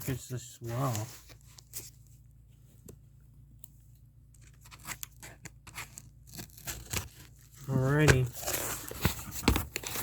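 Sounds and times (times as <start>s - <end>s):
packaging rustling: 4.4s - 10.0s.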